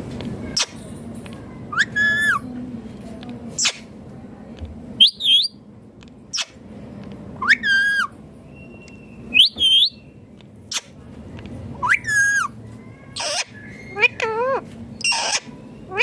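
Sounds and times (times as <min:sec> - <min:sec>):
parakeet squawking: 0:00.4 - 0:00.8, 0:01.7 - 0:02.4, 0:07.4 - 0:08.1, 0:11.8 - 0:16.0
parakeet chirps: 0:01.7 - 0:02.4, 0:03.6 - 0:03.9, 0:05.0 - 0:05.6, 0:06.3 - 0:06.6, 0:07.4 - 0:11.0, 0:11.8 - 0:16.0.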